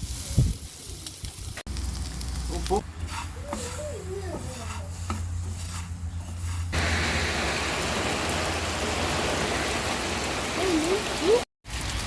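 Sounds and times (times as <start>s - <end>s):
heavy rain falling: 6.8s - 12.0s.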